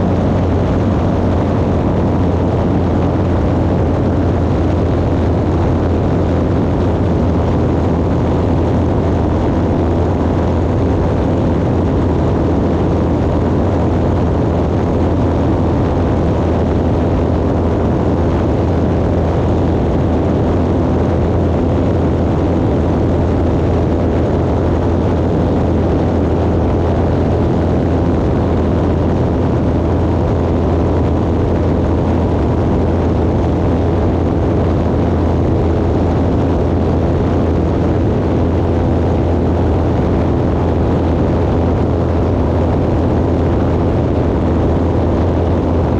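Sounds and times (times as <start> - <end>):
propeller aircraft engine drone: 0.0 - 45.9.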